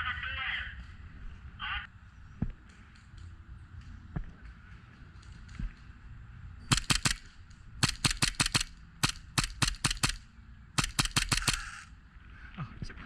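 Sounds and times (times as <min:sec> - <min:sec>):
airsoft gun shots: 0:06.7 - 0:10.2, 0:10.8 - 0:11.9.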